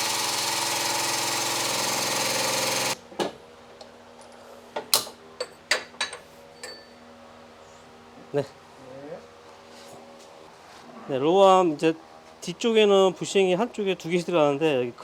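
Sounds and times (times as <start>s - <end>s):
press mechanical buzz: 0.0s - 3.0s.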